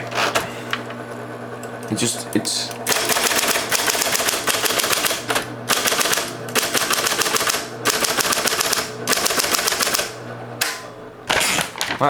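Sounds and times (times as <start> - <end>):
electric typewriter keystrokes: 2.6 - 12.0.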